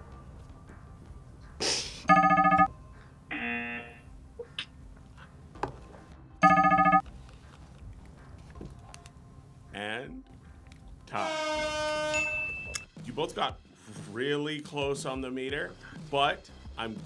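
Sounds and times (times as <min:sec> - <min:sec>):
electronic buzzer tones: 0:02.1 - 0:02.7, 0:03.3 - 0:04.0, 0:06.4 - 0:07.0.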